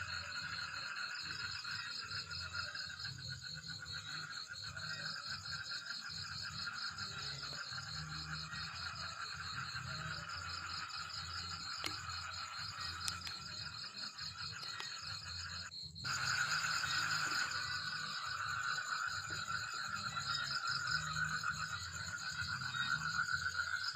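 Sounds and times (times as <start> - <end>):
frogs calling: 0.0 - 23.9
insects trilling: 0.0 - 23.9.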